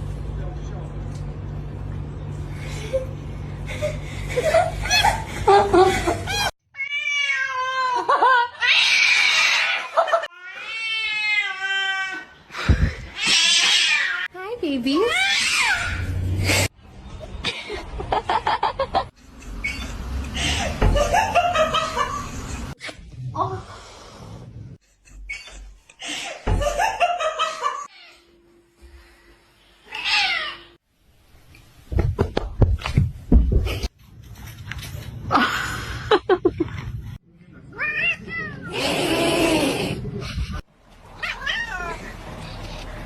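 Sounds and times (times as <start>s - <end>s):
person laughing: 35.3s - 36.8s
cat meowing: 41.2s - 42.1s.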